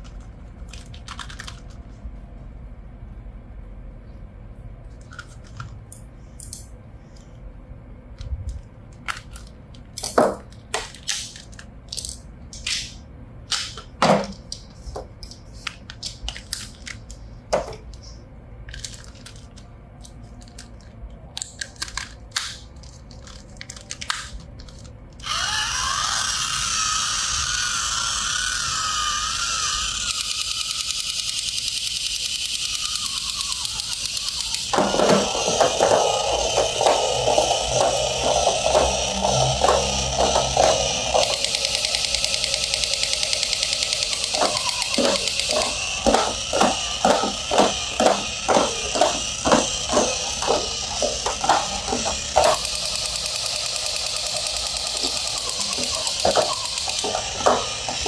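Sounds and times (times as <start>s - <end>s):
toy motor whirring: 21.4s - 58.0s
wavering electronic tone: 34.7s - 53.5s, 54.2s - 58.0s.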